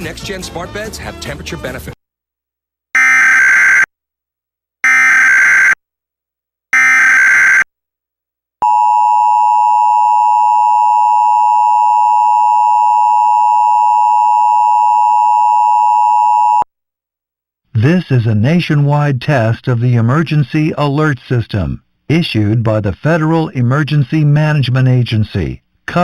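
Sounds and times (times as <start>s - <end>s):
two-tone alarm: 3.0s - 3.9s, 4.8s - 5.8s, 6.8s - 7.7s, 8.6s - 16.6s.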